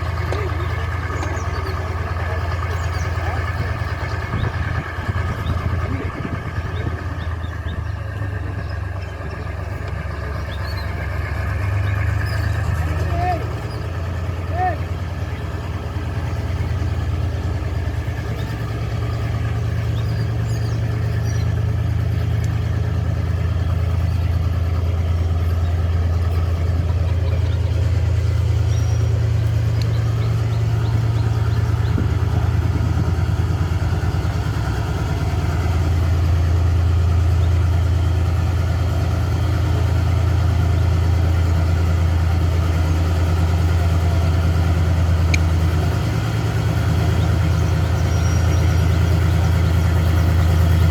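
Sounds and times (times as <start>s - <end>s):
locomotive diesel engine humming: 0.0s - 50.9s.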